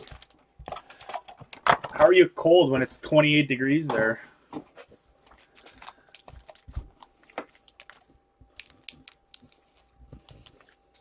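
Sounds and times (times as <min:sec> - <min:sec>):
wrappers and cardboard crinkling: 0:00.0 - 0:00.4, 0:05.0 - 0:11.0.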